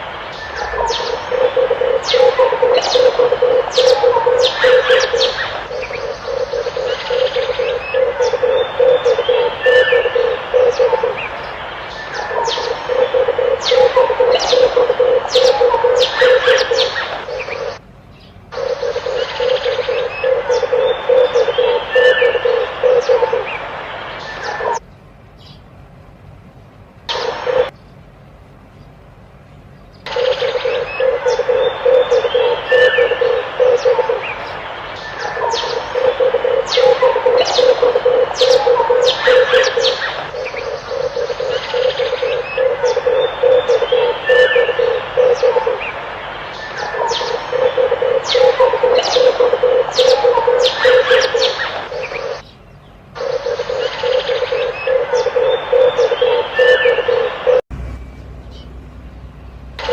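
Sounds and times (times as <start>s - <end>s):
doves cooing: 0.0s - 17.8s, 18.5s - 24.8s, 27.1s - 27.7s, 30.1s - 52.4s, 53.1s - 57.6s
birds chirping and whistling: 0.0s - 24.8s, 27.1s - 28.0s, 29.8s - 59.9s.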